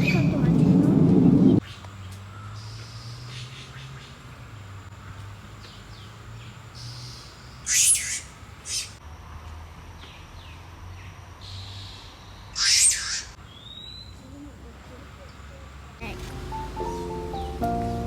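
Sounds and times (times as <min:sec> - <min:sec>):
high-pitched bird calls: 0:07.6 - 0:09.0, 0:12.6 - 0:14.1.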